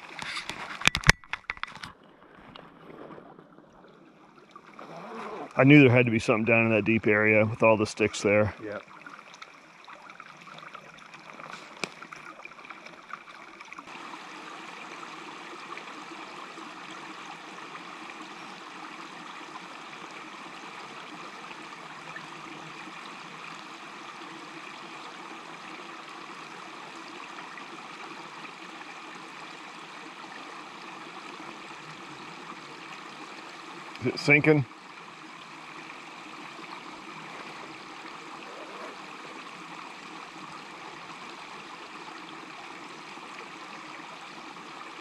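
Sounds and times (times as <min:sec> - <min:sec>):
stream running over rocks: 0:00.0 - 0:45.0.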